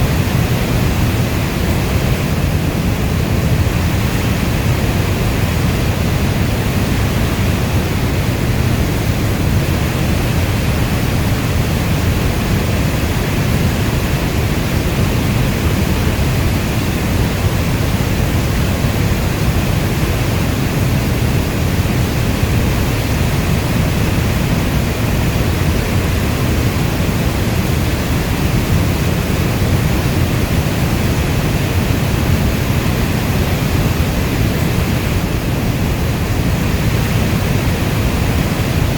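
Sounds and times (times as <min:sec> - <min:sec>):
steady rainfall: 0:00.0 - 0:38.9.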